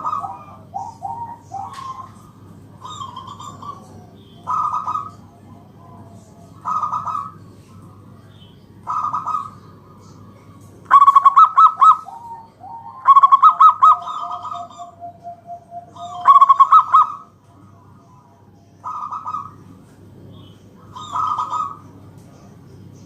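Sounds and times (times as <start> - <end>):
dove cooing: 0.0 - 8.1, 8.8 - 17.4, 18.8 - 19.7, 20.4 - 22.0.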